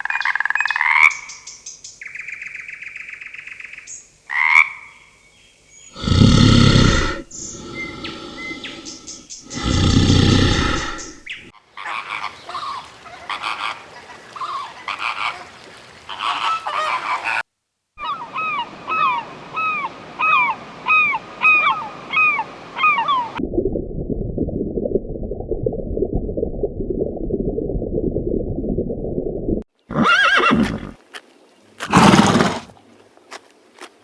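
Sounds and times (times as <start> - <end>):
roar: 6.0 - 11.3, 31.9 - 32.7
geese honking: 11.8 - 17.4.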